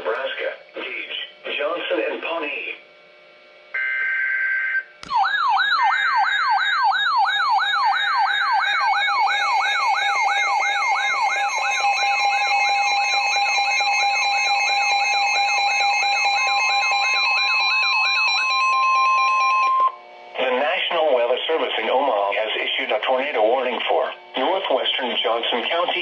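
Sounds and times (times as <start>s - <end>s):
steady low siren tone: 3.8s - 21.2s
electronic siren wailing: 3.8s - 22.4s.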